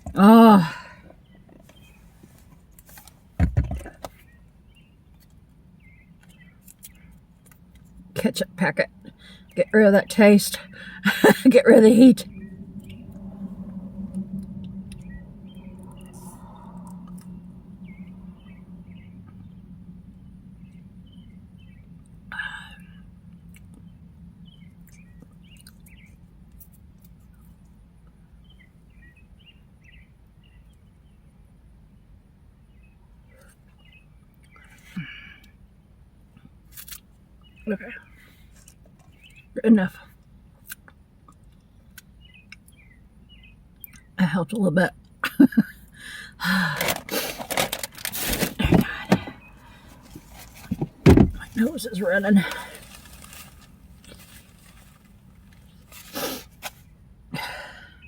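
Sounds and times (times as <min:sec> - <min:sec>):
low steady hum: 0:00.0 - 0:58.0
dull thump: 0:48.2 - 0:49.5, 0:50.1 - 0:51.7.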